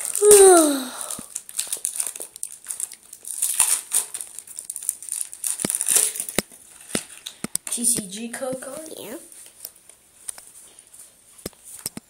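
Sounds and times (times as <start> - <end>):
foil wrapper crinkling: 0.0 - 7.5.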